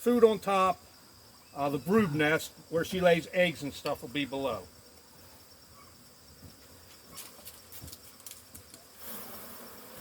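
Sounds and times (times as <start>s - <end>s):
bees buzzing: 8.9s - 10.0s.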